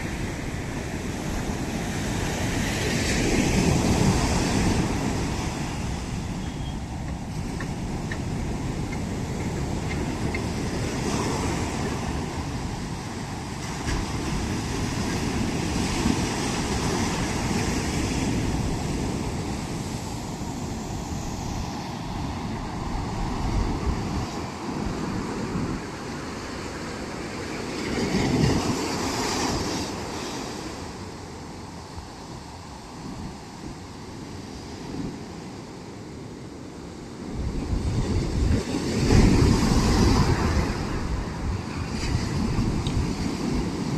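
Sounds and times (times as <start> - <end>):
wind buffeting microphone: 0.0 - 35.7, 37.0 - 43.9
sea waves breaking on shore: 0.0 - 43.9.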